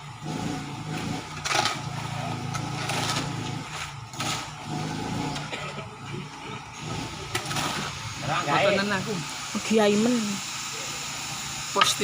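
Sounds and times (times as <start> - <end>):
small engine running: 0.0 - 12.0.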